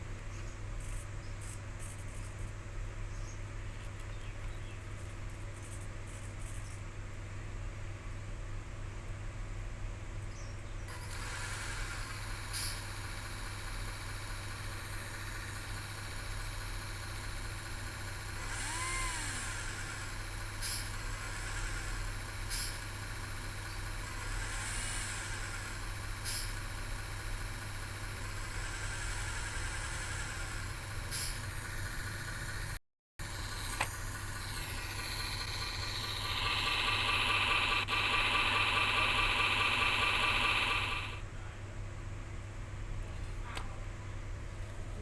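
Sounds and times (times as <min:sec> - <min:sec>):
simulated engine idling: 0:10.9 - 0:41.2.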